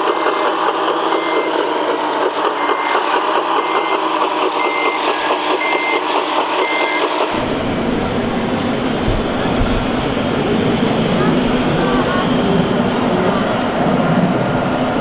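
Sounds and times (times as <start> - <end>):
reversing beeper: 0.0 - 14.0
diesel engine running: 0.0 - 15.0
deeper rougher engine sound: 6.7 - 15.0.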